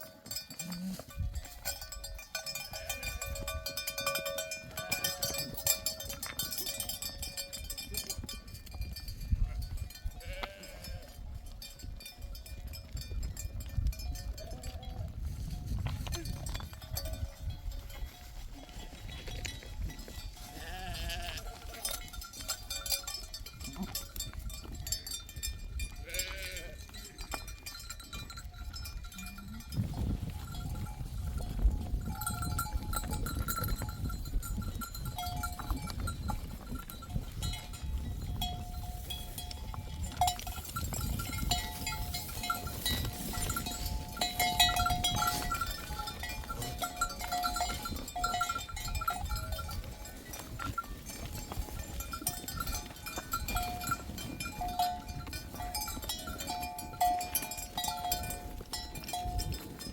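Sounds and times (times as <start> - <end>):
livestock bells clinking: 0.0 - 59.9
sheep bleating: 9.4 - 11.2, 20.5 - 21.6, 26.0 - 26.9.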